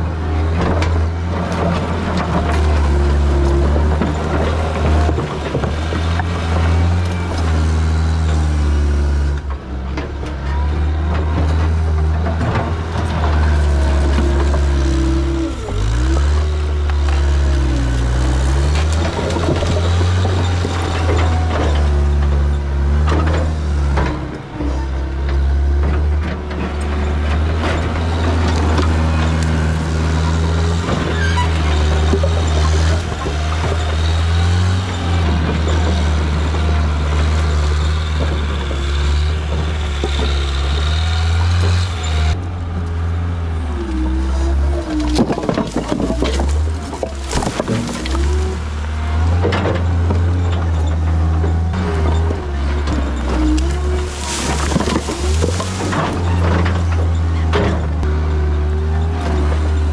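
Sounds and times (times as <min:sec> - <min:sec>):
diesel engine running hard: 0:00.0 - 0:59.9
machine clanks and knocks: 0:44.5 - 0:58.1.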